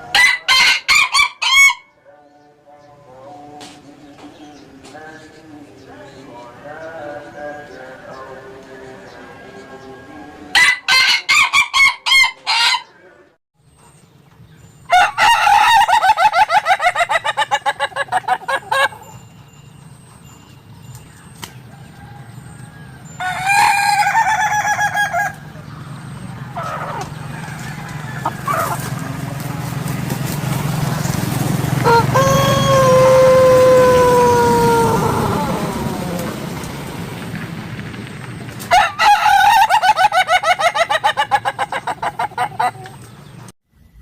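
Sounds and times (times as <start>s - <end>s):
chicken crowing laugh-like notes: 0.0s - 1.9s, 10.6s - 12.9s, 14.9s - 19.2s, 21.9s - 25.5s, 31.8s - 36.6s, 38.7s - 42.8s.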